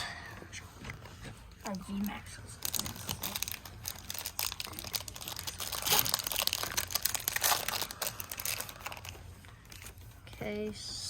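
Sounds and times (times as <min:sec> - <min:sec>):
foil wrapper crinkling: 0:01.6 - 0:10.0.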